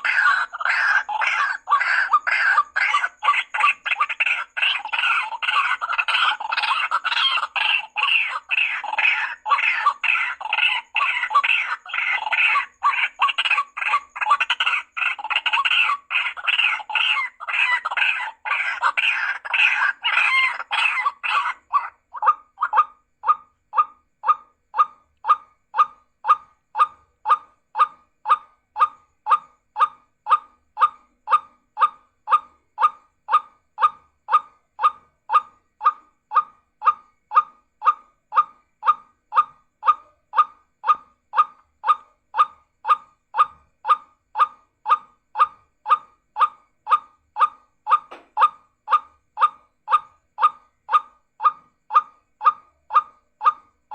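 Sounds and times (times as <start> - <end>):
bird call short clipped note: 48.1 - 48.5.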